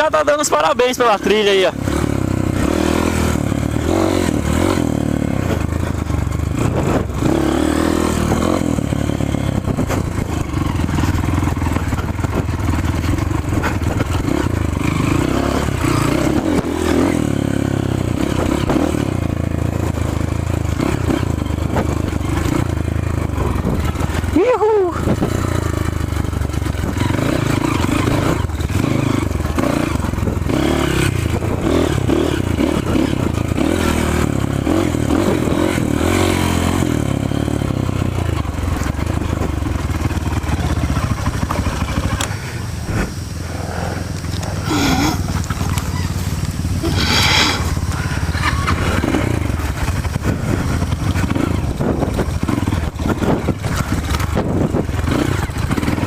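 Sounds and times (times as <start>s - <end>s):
off-road motorcycle engine revving: 0.0s - 56.0s.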